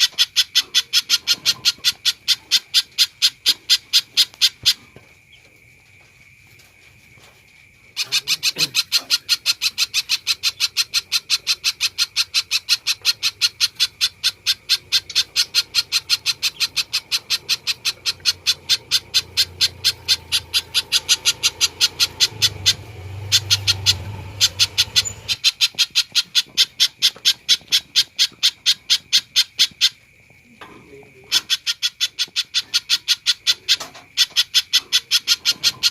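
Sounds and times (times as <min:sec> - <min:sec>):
bird calling sharp chips: 0:07.9 - 0:30.1.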